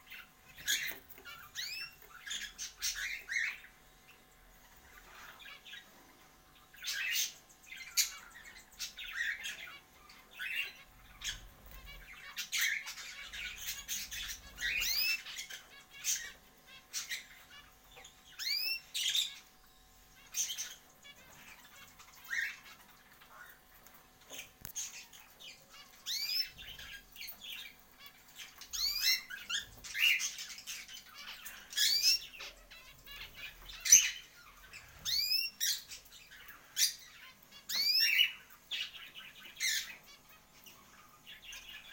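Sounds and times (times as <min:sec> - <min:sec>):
small birds chirping and squawking: 0:00.0 - 0:41.9.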